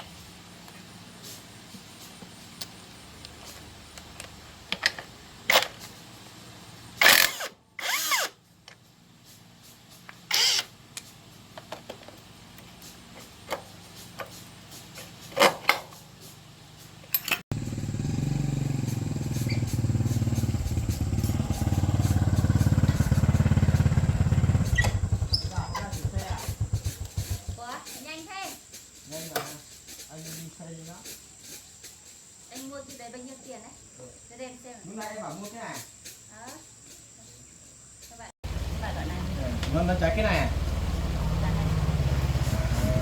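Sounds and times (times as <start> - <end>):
small motorbike engine running: 17.5 - 27.8, 38.4 - 43.0.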